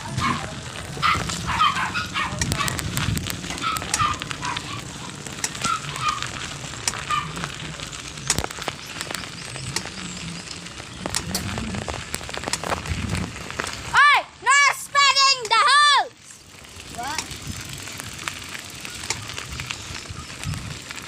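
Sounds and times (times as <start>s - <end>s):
rain pattering: 0.0s - 21.0s.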